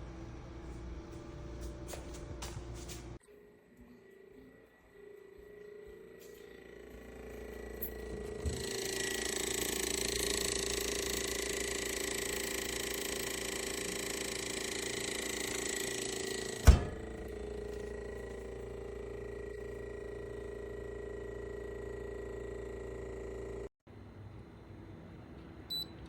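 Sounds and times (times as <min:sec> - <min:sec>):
low mechanical hum: 0:00.0 - 0:26.0.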